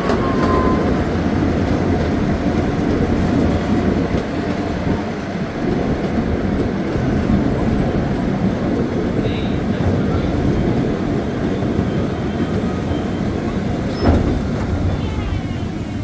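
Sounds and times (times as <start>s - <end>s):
miniature train rumbling on track: 0.0s - 16.0s.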